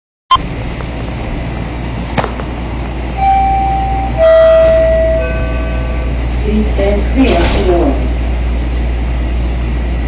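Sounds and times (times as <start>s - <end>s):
subway train low hum: 0.3s - 10.0s
door-closing chime: 3.2s - 6.3s.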